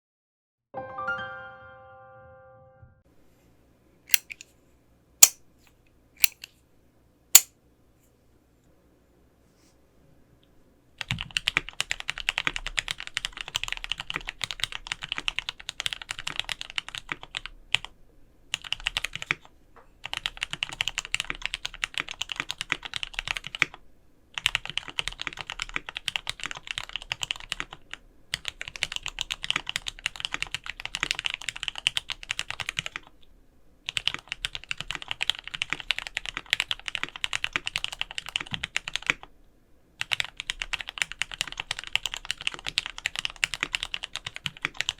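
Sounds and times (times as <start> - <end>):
fast typing on mechanical keyboard: 11.0 - 33.2, 33.9 - 39.3, 40.0 - 44.9.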